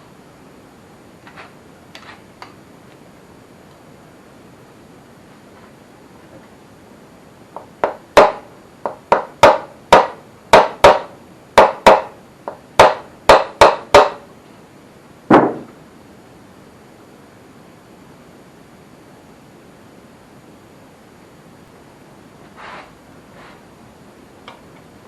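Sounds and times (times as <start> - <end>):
hammer tapping on metal: 7.6 - 14.2.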